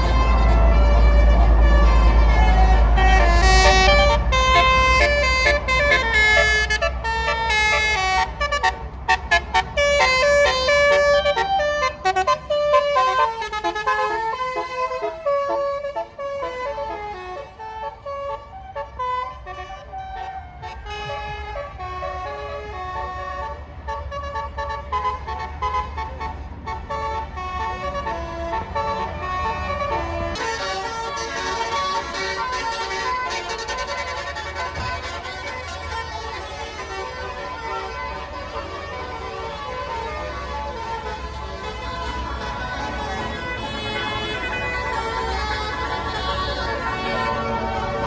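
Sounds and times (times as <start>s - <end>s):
bus engine rumble: 0.0s - 48.0s
musical air horn tune: 0.0s - 48.0s.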